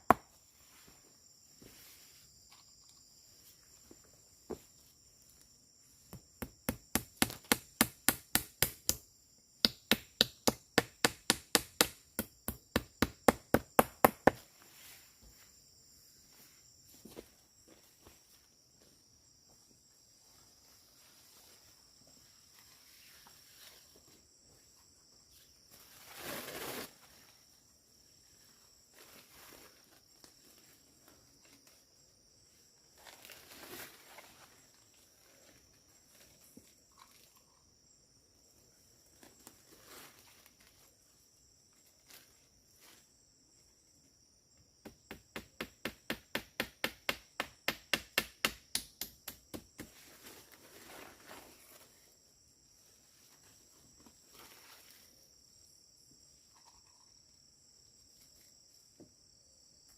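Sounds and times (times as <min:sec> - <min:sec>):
forest insects droning: 0:00.0 - 0:59.9
rustling: 0:49.9 - 0:52.1.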